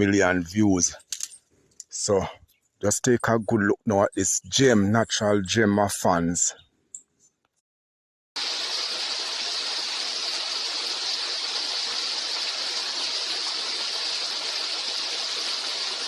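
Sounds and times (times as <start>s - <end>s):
waterfall splashing: 8.4s - 16.0s.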